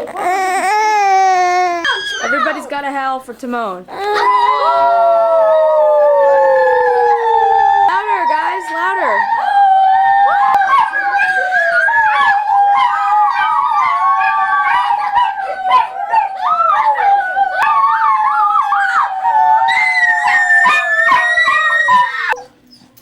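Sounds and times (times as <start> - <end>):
dog howling: 1.8 - 2.7, 3.9 - 22.6
people howling: 1.8 - 2.7, 4.0 - 22.4.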